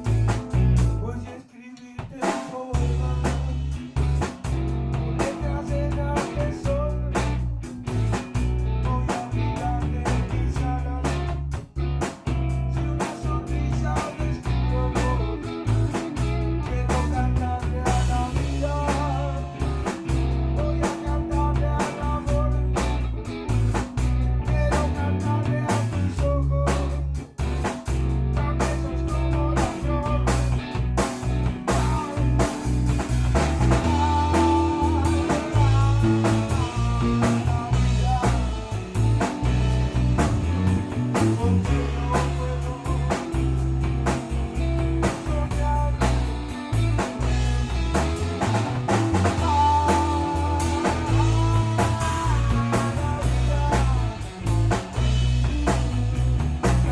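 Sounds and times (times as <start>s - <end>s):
drum beats: 0.0s - 1.0s, 1.8s - 56.9s
guitar melody: 0.0s - 1.3s, 2.8s - 56.9s
bass line: 0.0s - 1.4s, 2.7s - 56.9s
rock band playing: 0.0s - 56.9s
drum beat: 29.6s - 56.9s.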